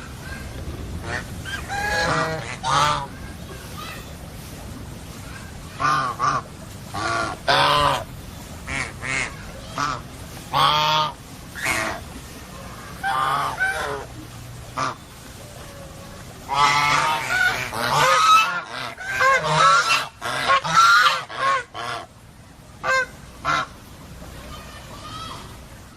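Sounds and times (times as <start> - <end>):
low steady hum: 0.0 - 25.9
birds honking calls: 0.3 - 3.2, 8.7 - 22.1.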